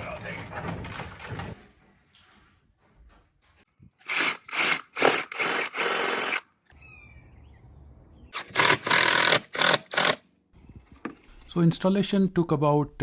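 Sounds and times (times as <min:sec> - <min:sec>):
power drill running: 0:04.0 - 0:06.4, 0:08.4 - 0:10.2.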